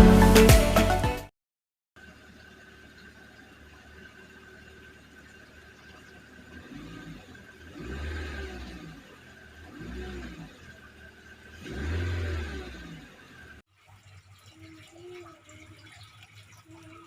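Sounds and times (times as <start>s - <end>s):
car engine idling and revving: 2.4s - 13.7s.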